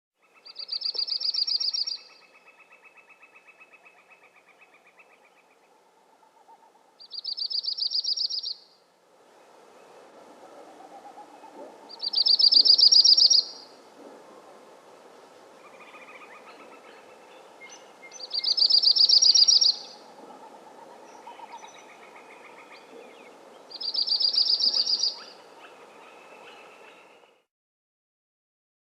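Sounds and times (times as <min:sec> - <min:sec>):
warbler singing trilled songs: 0:00.3 - 0:03.2, 0:07.0 - 0:08.7, 0:11.9 - 0:13.7, 0:17.6 - 0:20.0, 0:21.1 - 0:25.4.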